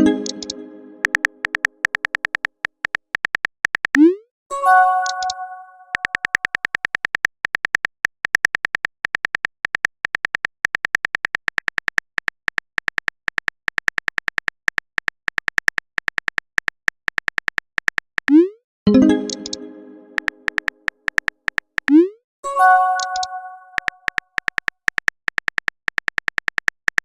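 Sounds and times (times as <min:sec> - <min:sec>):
phone keyboard typing clicks: 0:00.0 - 0:04.2, 0:05.0 - 0:18.5, 0:19.1 - 0:22.1, 0:22.9 - 0:27.0.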